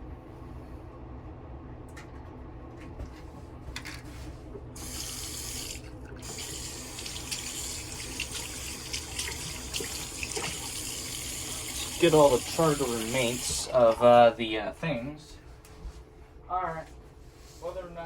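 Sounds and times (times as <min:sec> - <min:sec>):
steady low hum: 0:00.0 - 0:18.0
tap water running into sink: 0:04.8 - 0:14.0.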